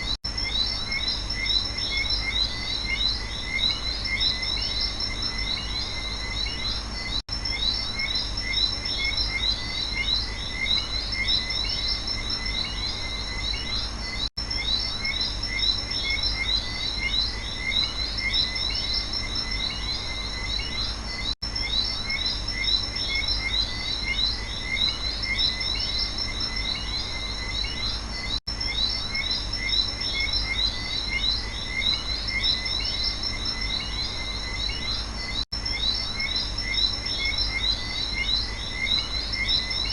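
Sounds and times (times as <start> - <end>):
frogs calling: 0.0 - 39.9
insects chirping: 0.0 - 39.9.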